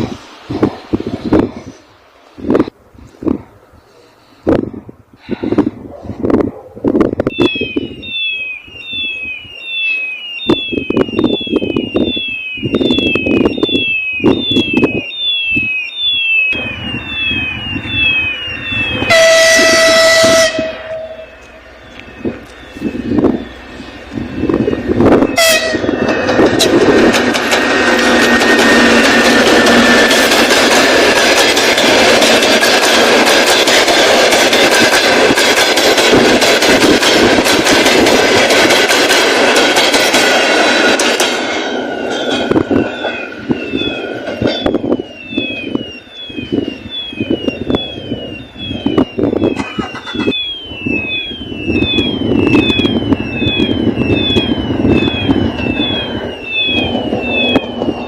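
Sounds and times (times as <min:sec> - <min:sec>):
steady high ringing tone: 0:07.2 - 0:35.0, 0:41.7 - 0:58.0
electronic warning signal chirping: 0:07.2 - 0:41.0, 0:42.0 - 0:58.0
train clatter: 0:16.5 - 0:58.0
train horn: 0:18.8 - 0:21.6, 0:25.3 - 0:26.0.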